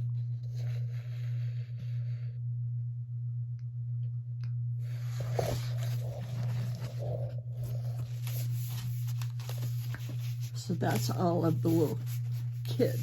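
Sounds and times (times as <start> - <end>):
low electrical hum: 0.0 - 13.0
paper and envelopes rustling: 5.1 - 13.0.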